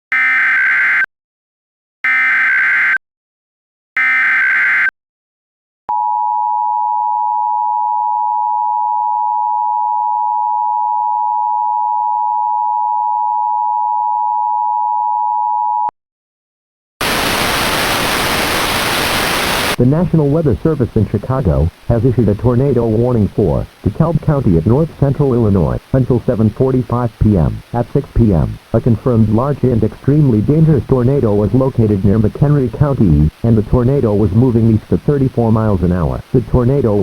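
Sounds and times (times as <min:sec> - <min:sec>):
digital data screech bursts: 0:17.0 - 0:19.8.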